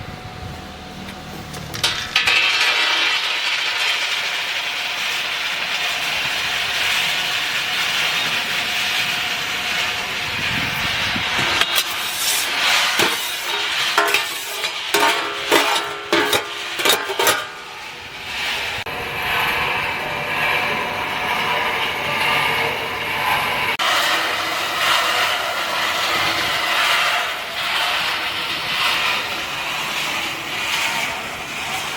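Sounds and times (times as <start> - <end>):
roasting machine hissing: 0.0 - 31.9
sharp clatters and knocks: 1.4 - 18.9.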